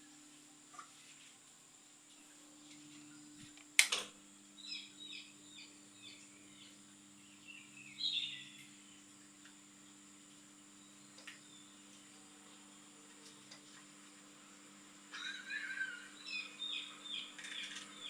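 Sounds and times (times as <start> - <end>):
ceiling fan motor humming: 0.0 - 18.0
lower hum: 0.0 - 18.0
sharp click: 3.7 - 4.1.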